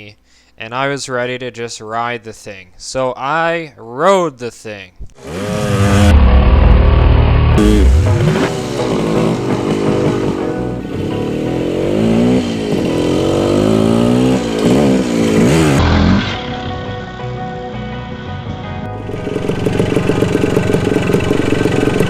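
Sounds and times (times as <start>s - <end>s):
two-stroke motorcycle engine revving: 5.2s - 16.8s, 19.1s - 22.0s.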